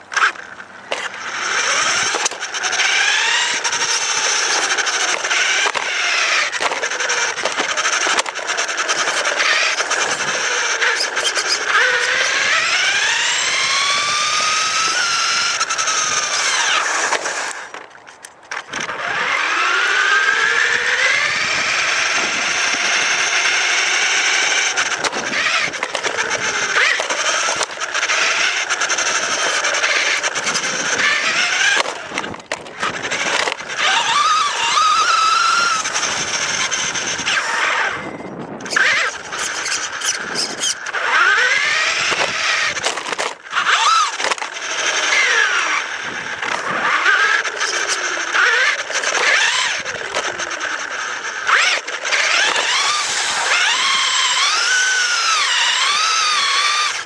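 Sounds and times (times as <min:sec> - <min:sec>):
electric motor whining: 0:00.0 - 0:57.0
chassis rattling knocks: 0:29.1 - 0:34.3.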